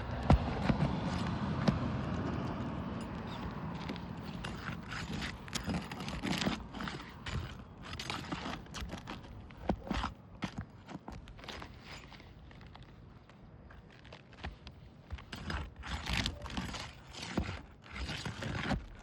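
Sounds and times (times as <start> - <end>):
tools knocking on roof shingles: 0.0 - 2.7.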